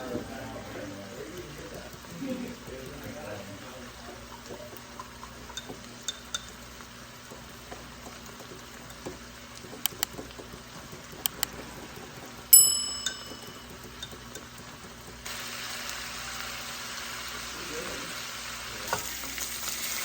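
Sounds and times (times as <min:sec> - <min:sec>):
food sizzling in a hot pan: 0:00.0 - 0:11.1, 0:11.8 - 0:20.0
light clicks and taps: 0:07.2 - 0:11.6.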